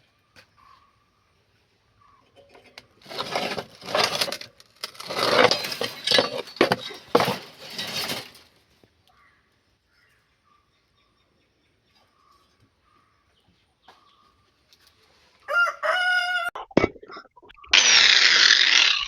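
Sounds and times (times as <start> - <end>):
hard objects scraping and clinking: 2.4 - 8.5.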